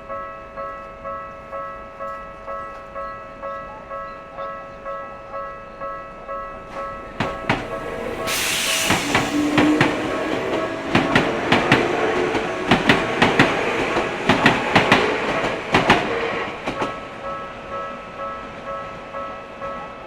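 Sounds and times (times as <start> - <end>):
train wheels clacking over rails: 6.7 - 17.6.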